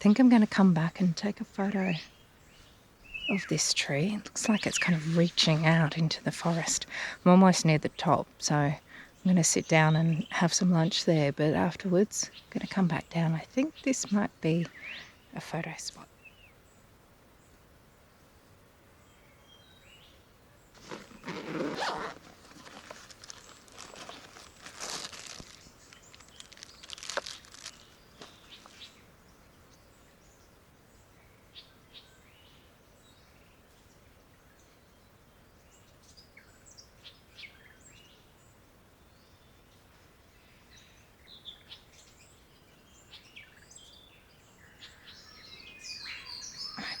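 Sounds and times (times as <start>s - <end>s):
rainforest ambience: 0.0s - 47.0s
close rustling and crunching: 20.8s - 28.9s.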